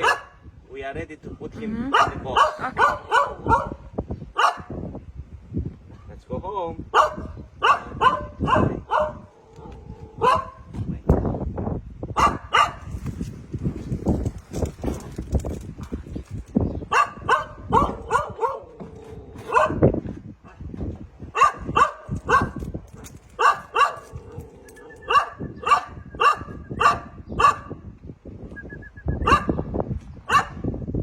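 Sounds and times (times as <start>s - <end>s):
dog barking: 0.0s - 0.4s, 1.9s - 4.8s, 6.9s - 10.7s, 12.2s - 12.9s, 16.9s - 19.8s, 21.3s - 22.6s, 23.4s - 24.4s, 25.1s - 27.8s, 29.2s - 29.6s, 30.3s - 30.7s.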